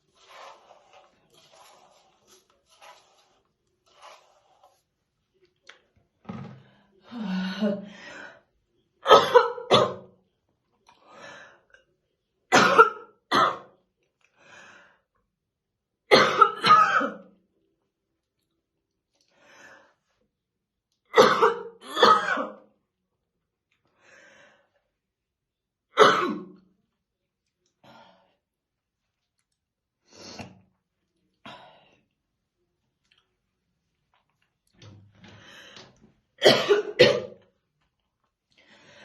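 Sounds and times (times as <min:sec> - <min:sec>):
woman coughing: 0:09.0 - 0:10.1, 0:16.1 - 0:17.2, 0:21.2 - 0:22.6, 0:36.4 - 0:37.4.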